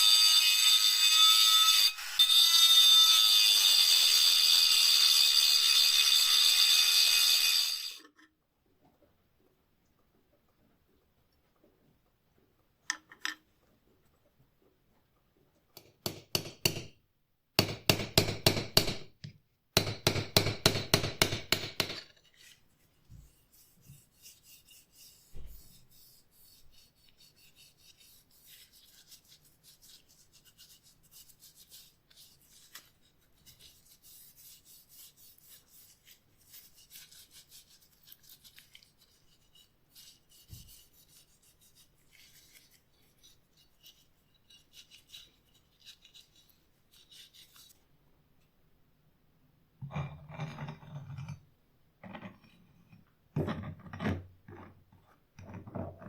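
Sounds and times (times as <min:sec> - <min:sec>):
metal being scraped by hand: 0:00.0 - 0:08.3, 0:20.7 - 0:47.8.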